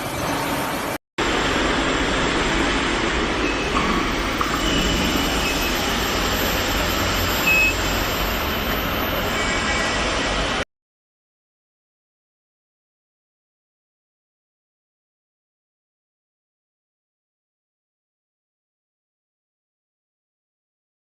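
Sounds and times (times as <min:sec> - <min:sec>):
mechanical rumble: 0:00.0 - 0:10.6
short high beep: 0:03.4 - 0:09.5.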